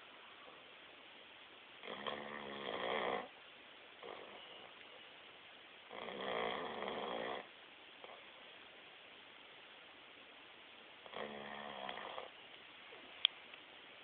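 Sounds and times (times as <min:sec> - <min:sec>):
dog snoring: 0:01.8 - 0:03.4, 0:04.0 - 0:04.8, 0:05.9 - 0:08.3, 0:11.0 - 0:12.4.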